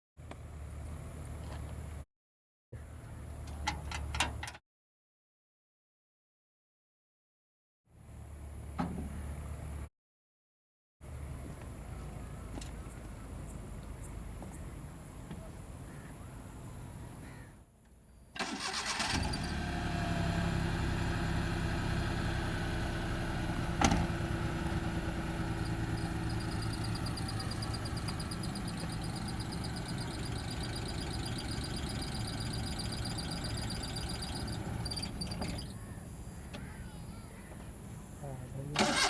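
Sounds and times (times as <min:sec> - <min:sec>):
car engine starting and idling: 0:18.4 - 0:35.9, 0:38.7 - 0:39.0.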